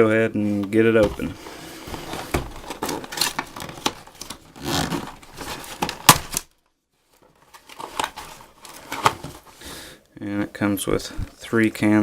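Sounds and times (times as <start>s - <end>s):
packaging rustling and crinkling: 0.7s - 9.6s
cardboard box tearing: 1.8s - 6.4s.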